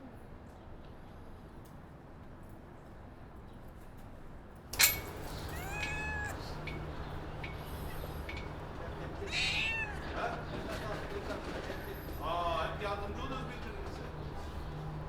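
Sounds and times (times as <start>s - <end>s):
cat meowing: 5.2s - 10.6s.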